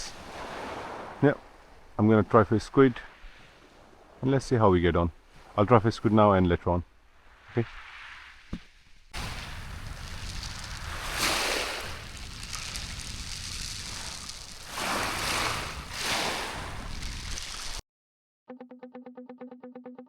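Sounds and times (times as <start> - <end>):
surf surging: 0.0 - 2.0, 9.2 - 17.8
small waves on a shingle beach: 0.0 - 4.3, 9.2 - 17.8.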